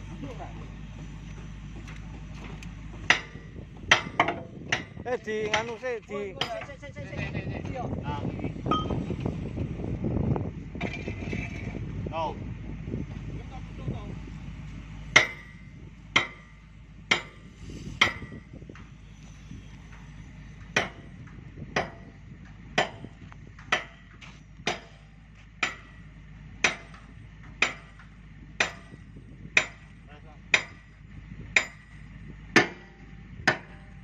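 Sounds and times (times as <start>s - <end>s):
hammer striking steel: 3.1s - 5.7s, 15.2s - 18.5s, 20.8s - 21.1s, 21.8s - 22.1s, 22.8s - 26.0s, 26.6s - 31.0s, 31.6s - 32.0s, 32.6s - 34.0s.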